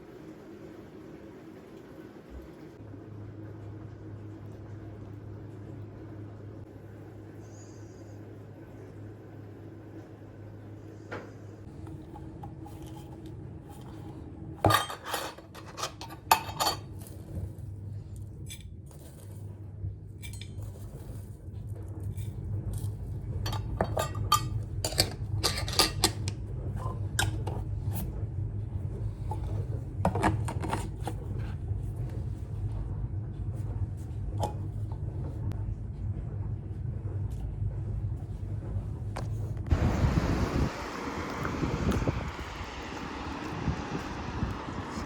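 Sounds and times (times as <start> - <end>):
steady low hum: 0.0 - 45.0
dishes and cutlery clinking: 14.6 - 17.4, 20.2 - 21.0, 23.5 - 27.6.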